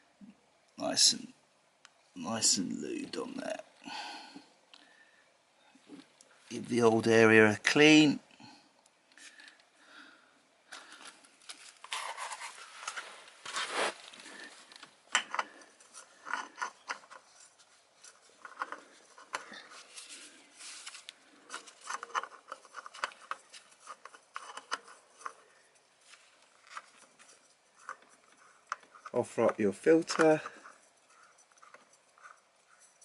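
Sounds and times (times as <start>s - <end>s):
hand rubbing and scraping metal: 11.0s - 33.0s.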